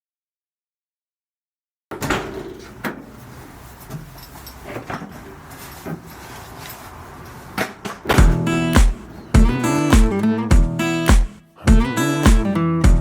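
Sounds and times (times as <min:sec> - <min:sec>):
knocks and clicks: 0:08.1 - 0:13.0
music with bass and guitar: 0:08.2 - 0:13.0.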